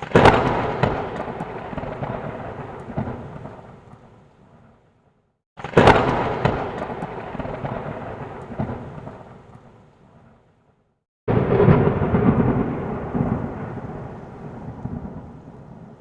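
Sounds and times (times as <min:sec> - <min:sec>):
loud thunderclap: 0:00.0 - 0:03.7, 0:05.6 - 0:09.3, 0:11.3 - 0:16.0
thunder rumbling: 0:00.0 - 0:04.8, 0:05.6 - 0:10.5, 0:11.3 - 0:16.0.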